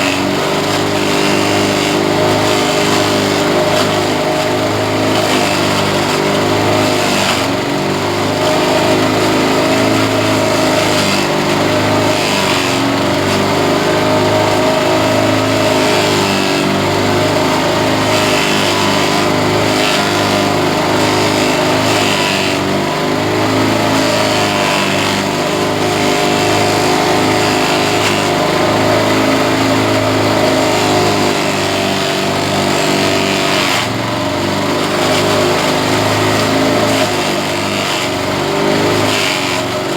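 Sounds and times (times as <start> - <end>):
small engine running: 0.0 - 39.9.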